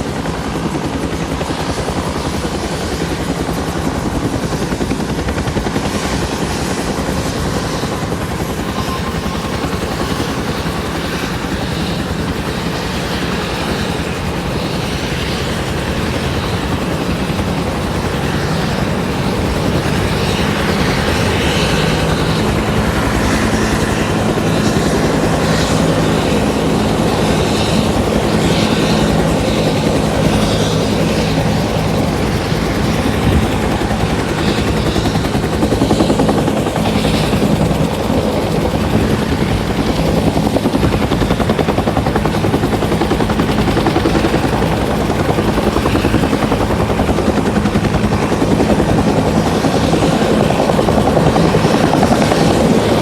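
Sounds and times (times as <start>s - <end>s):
helicopter engine and rotor: 0.0s - 53.0s.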